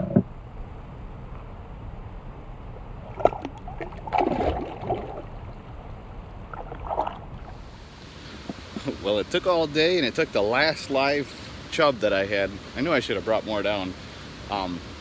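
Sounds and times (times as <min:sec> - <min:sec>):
water splashing and gurgling: 0:03.0 - 0:14.6.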